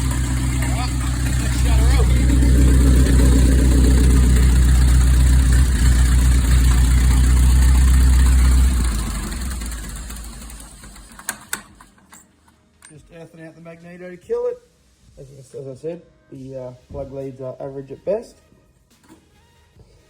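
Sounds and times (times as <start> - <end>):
tractor engine idling: 0.0 - 12.1
engine running down to a stop: 0.0 - 12.2.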